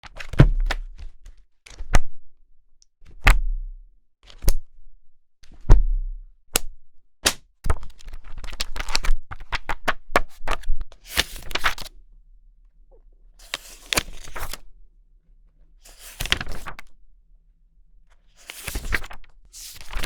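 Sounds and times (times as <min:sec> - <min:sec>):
pages flipping: 0:07.7 - 0:11.9, 0:13.4 - 0:14.6, 0:15.9 - 0:16.9, 0:18.4 - 0:20.0.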